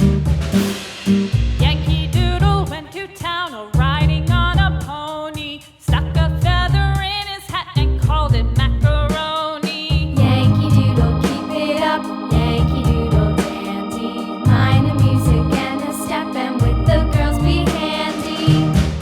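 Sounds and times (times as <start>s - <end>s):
upbeat background music: 10.0s - 19.0s.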